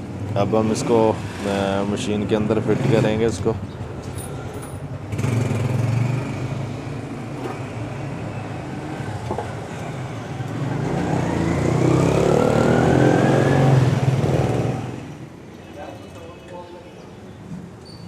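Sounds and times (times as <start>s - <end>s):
road traffic hum: 0.0s - 18.0s
vehicle accelerating past: 9.9s - 15.1s.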